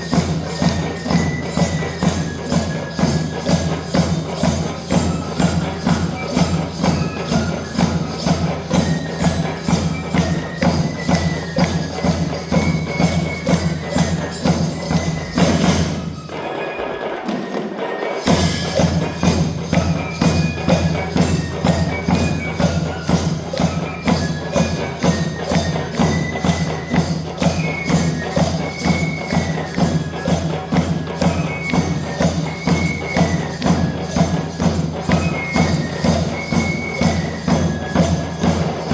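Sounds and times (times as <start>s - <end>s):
drum band playing: 0.0s - 38.9s
jingling percussion: 0.0s - 38.9s
deep drums: 18.2s - 38.9s.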